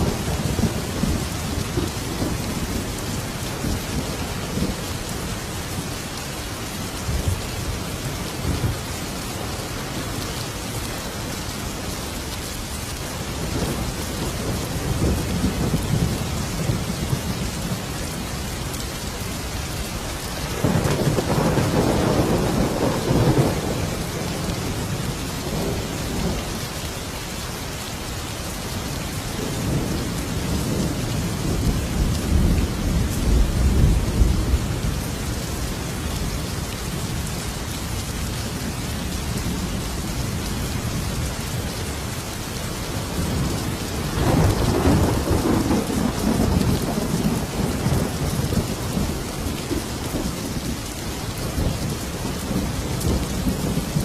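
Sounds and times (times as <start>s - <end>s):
rolling thunder: 0.0s - 5.9s, 20.4s - 26.5s, 42.9s - 50.8s
heavy rain: 0.0s - 54.0s.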